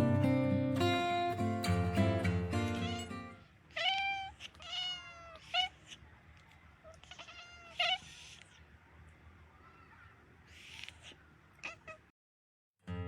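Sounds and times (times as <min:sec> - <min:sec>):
acoustic guitar music: 0:00.0 - 0:03.4
cats meowing: 0:02.6 - 0:08.7, 0:09.5 - 0:12.1.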